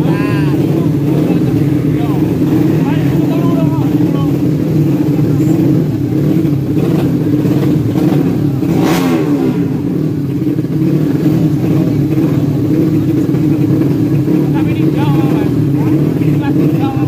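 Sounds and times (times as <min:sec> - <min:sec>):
motorcycle rushing past: 0:00.0 - 0:12.4
motorcycle engines running: 0:00.0 - 0:17.0.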